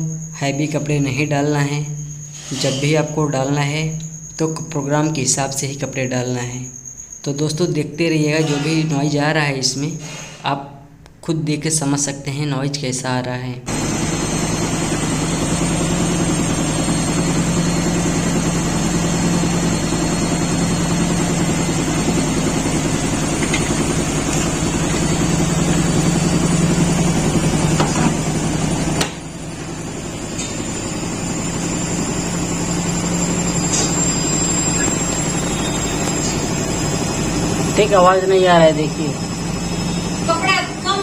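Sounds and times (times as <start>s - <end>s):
washing machine drone and rumble: 0.0s - 10.2s, 13.7s - 41.0s.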